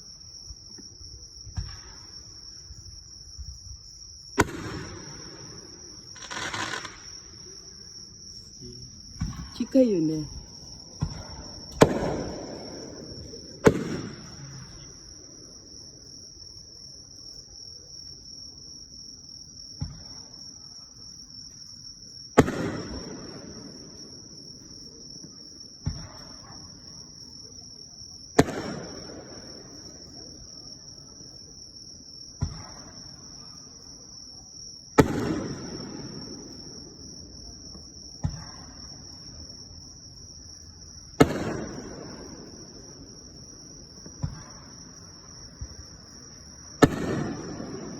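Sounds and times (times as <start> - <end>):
insects chirring: 0.0 - 47.9
fireworks bursting: 4.4 - 7.7, 8.6 - 15.2, 22.4 - 23.8, 28.4 - 30.0, 32.4 - 33.2, 35.0 - 37.0, 41.2 - 47.9.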